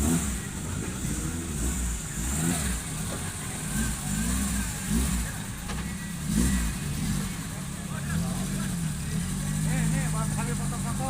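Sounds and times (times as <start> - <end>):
vehicle engine revving: 0.0 - 11.0.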